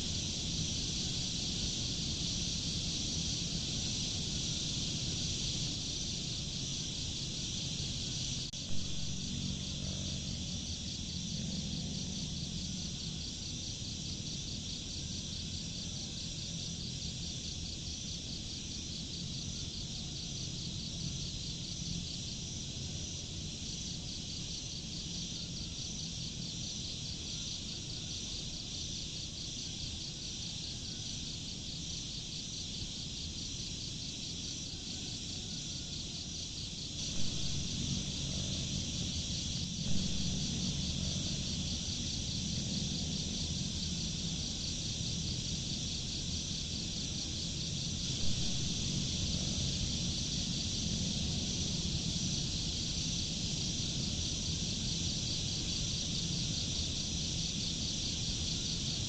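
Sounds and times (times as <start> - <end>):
low background rumble: 0.0 - 17.5, 36.9 - 59.0
insects trilling: 0.0 - 59.0.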